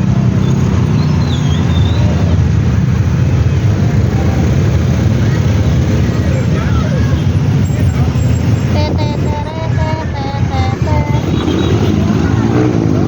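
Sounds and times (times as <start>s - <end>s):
heavy vehicle engine: 0.0s - 13.0s
road traffic rumble: 0.0s - 13.0s
faint voices: 3.6s - 13.0s.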